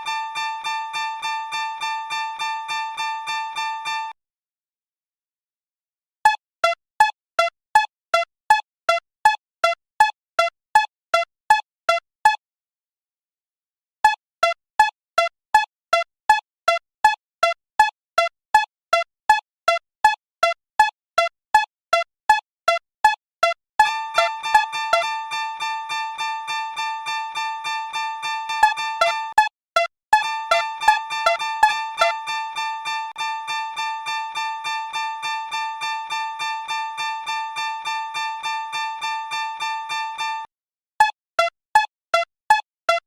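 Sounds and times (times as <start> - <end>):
railroad crossing bell ringing: 0.0 - 4.1, 23.8 - 29.3, 30.2 - 40.4.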